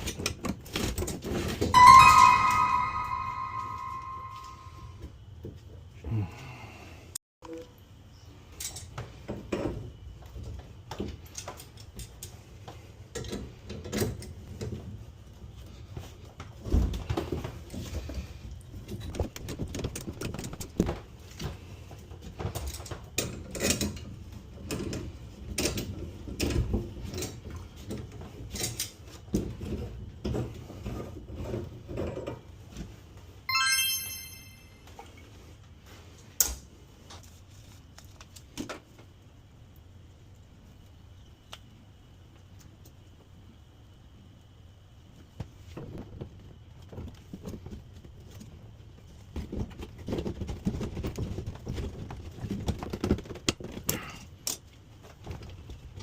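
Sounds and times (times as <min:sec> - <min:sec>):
short high-pitched squeak: 0:01.8 - 0:04.9.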